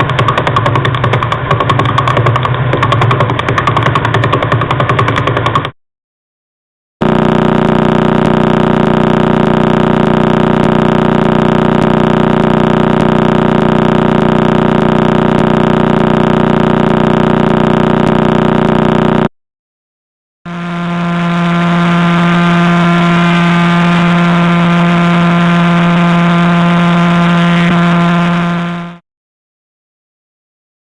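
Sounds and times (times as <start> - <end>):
steady hum: 7.0 - 19.2, 20.5 - 29.0
steady buzzing tone: 7.0 - 19.3, 20.5 - 29.0.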